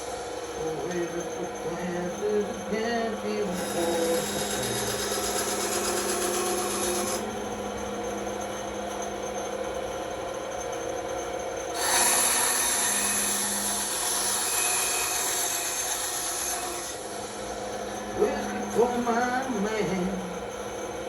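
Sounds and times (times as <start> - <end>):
bandsaw cutting wood: 0.0 - 7.3, 11.8 - 20.2.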